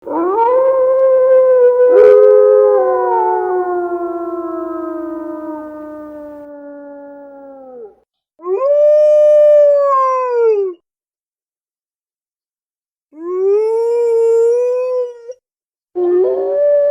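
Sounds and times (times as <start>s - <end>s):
wolf howling: 0.1s - 8.8s, 16.0s - 16.9s.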